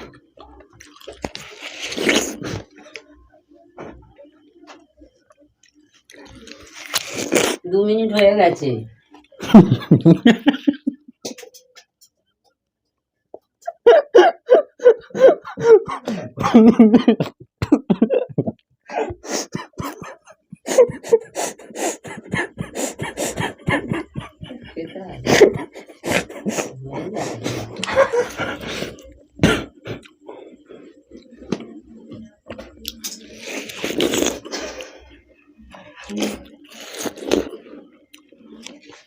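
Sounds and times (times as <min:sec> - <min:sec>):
eating watermelon: 0:00.0 - 0:03.1, 0:05.6 - 0:07.6, 0:19.0 - 0:39.0.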